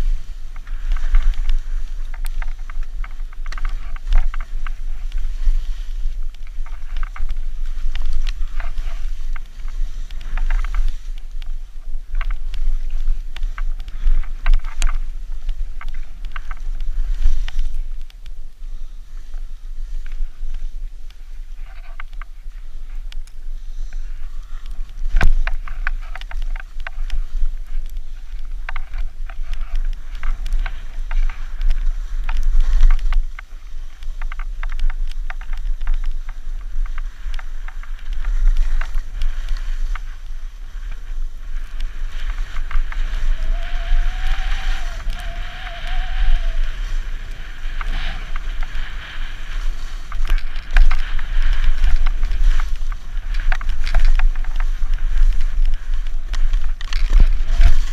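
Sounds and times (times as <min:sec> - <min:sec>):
skis hissing and scraping snow: 0:00.0 - 0:57.9
wind buffeting microphone: 0:19.2 - 0:57.9.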